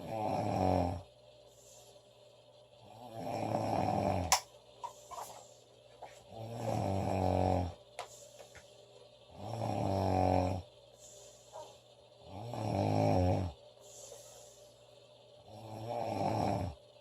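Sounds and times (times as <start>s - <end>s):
girl snoring loudly: 0.0s - 1.0s, 2.9s - 4.3s, 6.4s - 7.7s, 9.4s - 10.6s, 12.3s - 13.6s, 15.5s - 16.8s.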